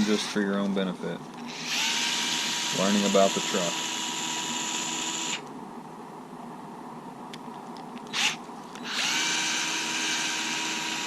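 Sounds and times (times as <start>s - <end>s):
power tool motor whine: 1.4s - 5.5s, 8.1s - 11.0s.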